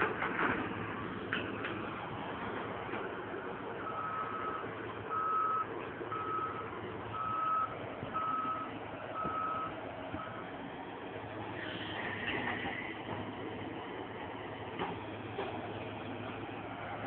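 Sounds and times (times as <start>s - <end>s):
excavator travel alarm beeping: 3.8s - 10.5s.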